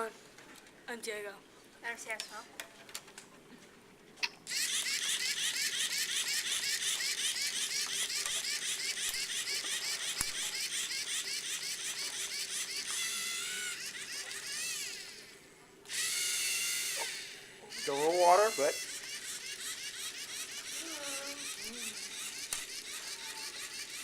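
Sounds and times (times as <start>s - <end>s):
robot motors and gears whirring: 4.5s - 15.2s.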